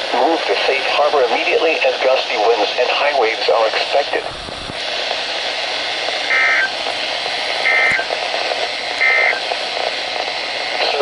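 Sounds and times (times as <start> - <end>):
radio hiss: 0.0 - 11.0
two-tone digital data screech: 6.3 - 6.8, 7.6 - 8.1, 9.0 - 9.4.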